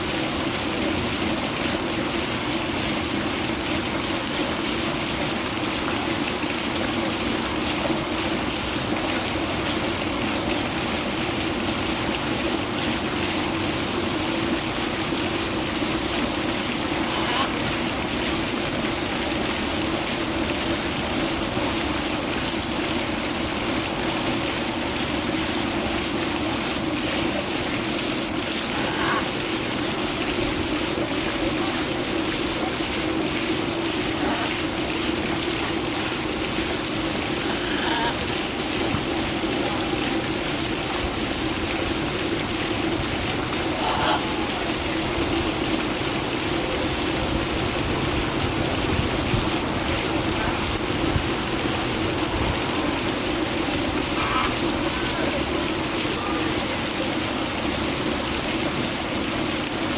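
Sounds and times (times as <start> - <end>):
faint parrot calls: 37.4 - 38.2, 43.8 - 44.3.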